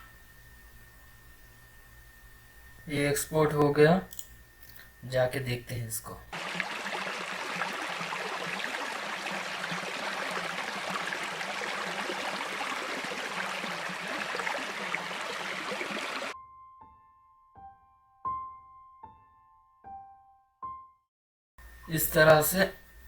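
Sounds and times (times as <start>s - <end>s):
running water rushing: 6.3s - 16.4s.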